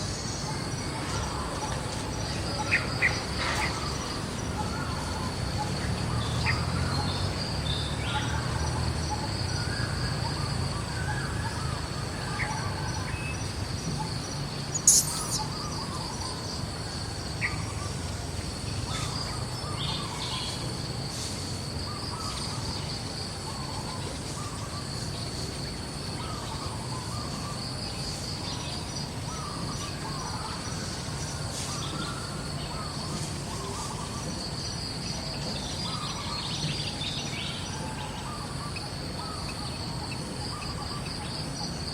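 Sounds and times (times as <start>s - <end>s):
high insect drone: 0.0s - 41.9s
bird calls: 14.7s - 16.4s.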